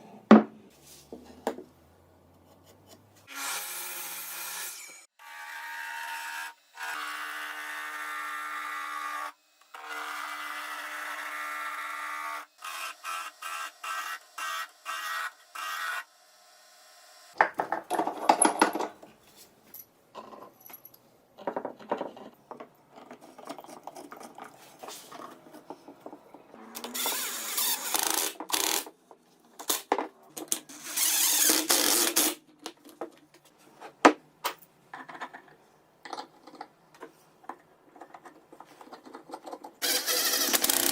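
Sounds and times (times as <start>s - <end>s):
scraping and rubbing: 22.0s - 26.9s
small power tool running: 39.8s - 40.9s.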